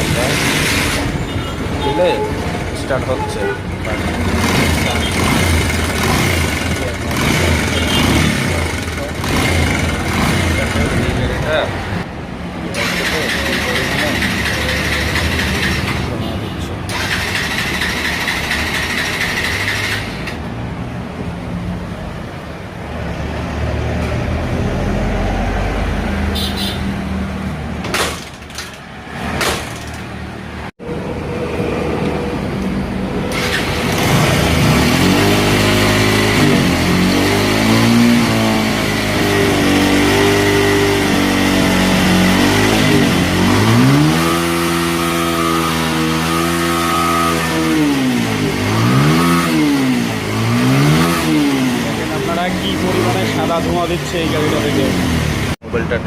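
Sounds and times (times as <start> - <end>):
motorcycle engine revving: 0.0 - 1.3, 3.7 - 20.4, 33.2 - 55.6.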